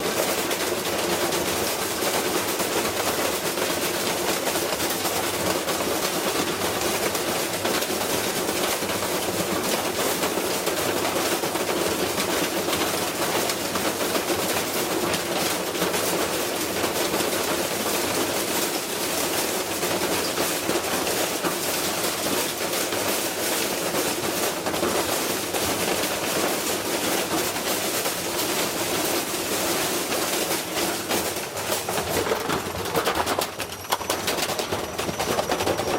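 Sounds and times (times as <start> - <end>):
mechanical clattering and rattling: 15.0 - 35.9.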